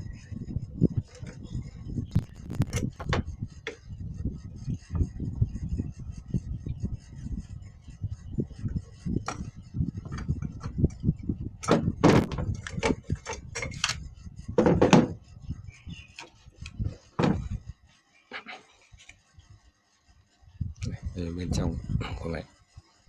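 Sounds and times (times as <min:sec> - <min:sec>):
plastic housing knocks and clatter: 0:11.6 - 0:14.0, 0:14.6 - 0:15.2, 0:17.2 - 0:17.6.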